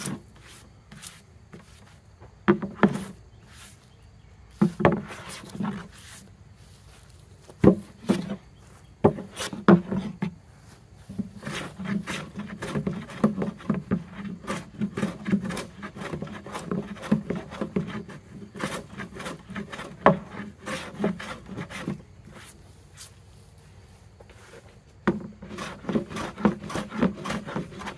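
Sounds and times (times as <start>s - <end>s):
hand plane shaving wood: 11.1s - 22.6s, 25.1s - 27.9s.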